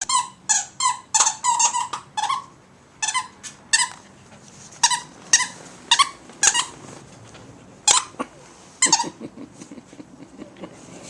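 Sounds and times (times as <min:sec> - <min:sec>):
squeaky dog toy squeaking: 0:00.0 - 0:04.0, 0:04.8 - 0:06.8, 0:07.8 - 0:08.2, 0:08.8 - 0:09.2.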